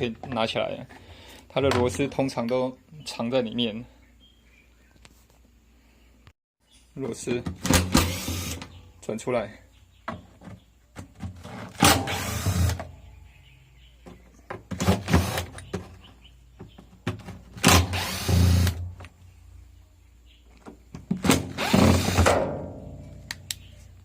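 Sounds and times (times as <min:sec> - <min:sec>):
cordless drill running: 0:08.0 - 0:08.6, 0:11.8 - 0:12.8, 0:17.7 - 0:18.8, 0:21.5 - 0:22.2.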